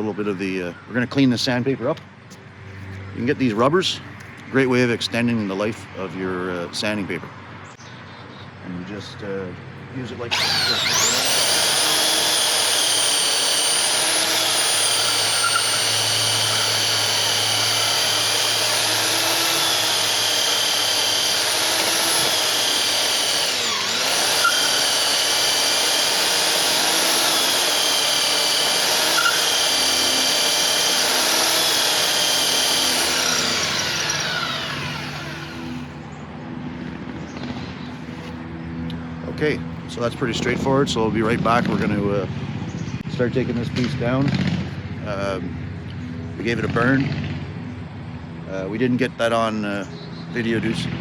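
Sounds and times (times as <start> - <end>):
belt sander whining: 10.1 - 36.2
rubber block against sanding belt: 10.4 - 34.3.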